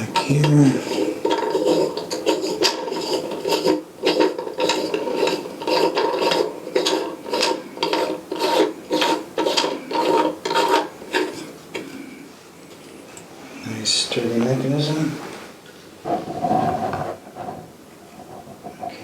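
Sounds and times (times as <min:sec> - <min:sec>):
metal threads squeaking and grinding: 0:00.0 - 0:11.4.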